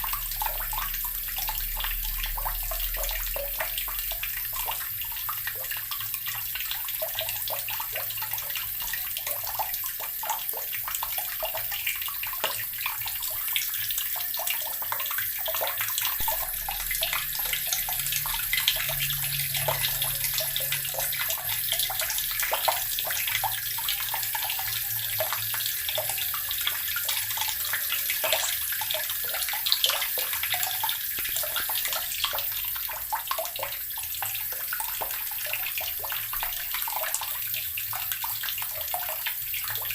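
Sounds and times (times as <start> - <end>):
tap water splashing into barrel: 28.2 - 39.9.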